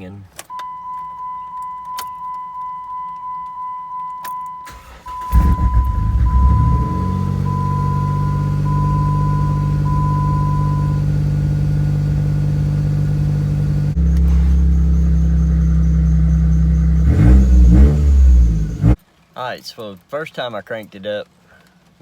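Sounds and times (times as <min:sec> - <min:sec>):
dashboard warning chime dinging: 0:00.5 - 0:19.0
car engine idling: 0:04.7 - 0:19.0.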